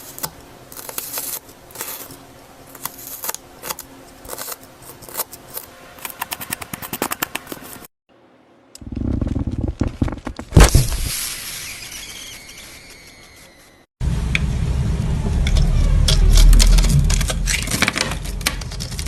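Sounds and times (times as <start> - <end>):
crackling and crunching: 15.5 - 19.0.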